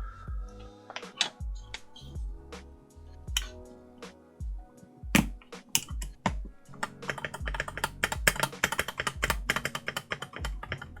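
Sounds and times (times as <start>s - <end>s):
background music with bass beat: 0.0s - 9.8s, 10.4s - 11.0s
keycaps clicking onto keyboard: 5.2s - 11.0s.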